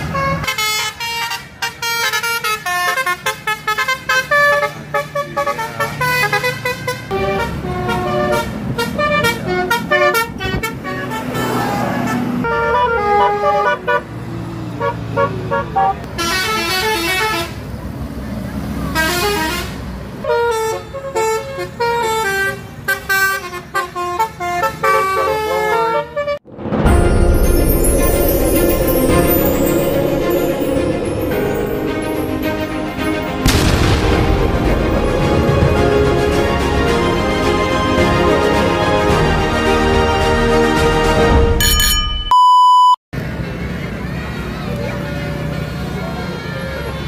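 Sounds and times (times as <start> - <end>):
multi-tone bus horn tune: 0.0 - 17.7, 18.9 - 26.4, 27.9 - 41.6
bus engine rumbling: 0.0 - 25.8, 26.4 - 41.6
bus engine running: 27.8 - 41.4.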